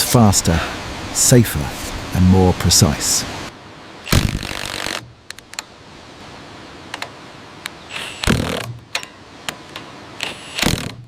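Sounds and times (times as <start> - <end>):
rasping bursts: 4.1 - 5.2, 7.9 - 9.1, 10.2 - 11.0.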